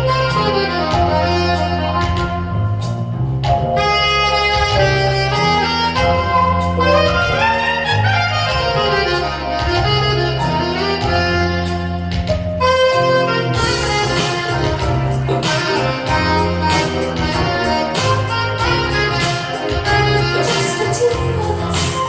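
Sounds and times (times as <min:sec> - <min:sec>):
instrumental melody: 0:00.0 - 0:22.0
stepping bass line: 0:00.0 - 0:22.0.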